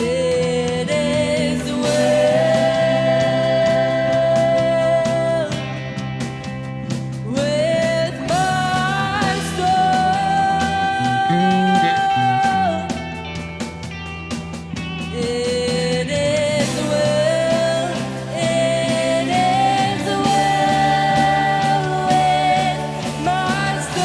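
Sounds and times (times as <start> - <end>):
worship band playing: 0.0 - 24.0
person singing long notes: 8.3 - 12.9, 15.7 - 24.0.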